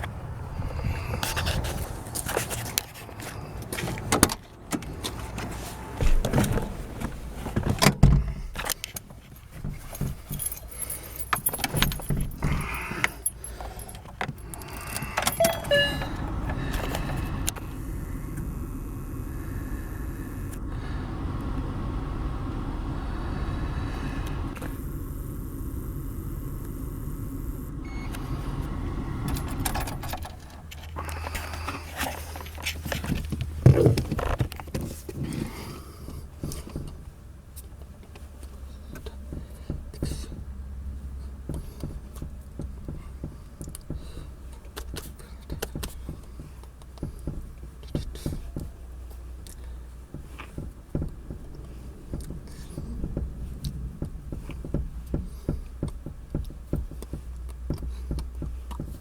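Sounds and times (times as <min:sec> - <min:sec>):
steady low hum: 0:13.8 - 0:34.2.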